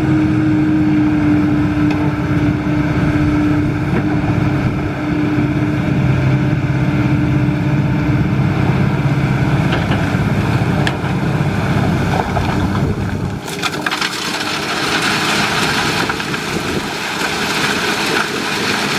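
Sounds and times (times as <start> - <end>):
excavator engine droning: 0.0 - 18.9
rushing rattling noise: 9.4 - 18.9.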